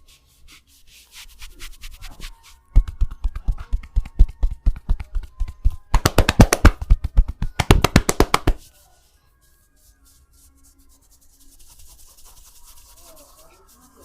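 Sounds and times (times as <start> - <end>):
hands striking body rhythmically: 2.8 - 8.6.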